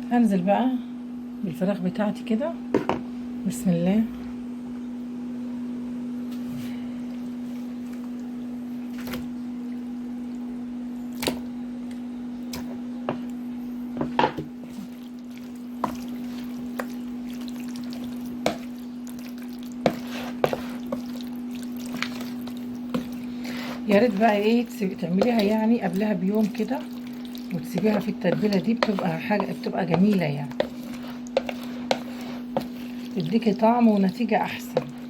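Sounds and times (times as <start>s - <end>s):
steady low hum: 0.0s - 35.0s
wet squelches of chicken in marinade: 14.6s - 35.0s.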